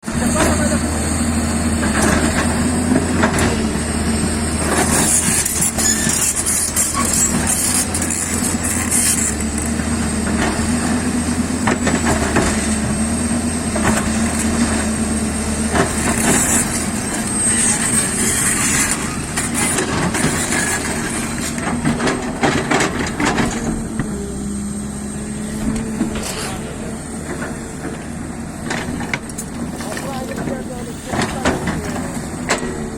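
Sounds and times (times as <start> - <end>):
diesel engine under load: 0.0 - 32.9
knocks and scrapes of soil and rock: 15.7 - 32.9.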